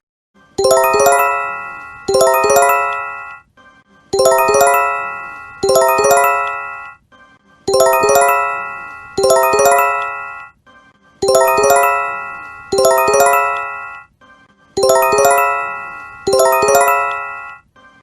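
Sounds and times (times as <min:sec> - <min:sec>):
rising bell-like warning chime: 0:07.8 - 0:10.5, 0:11.2 - 0:14.0, 0:14.8 - 0:17.6.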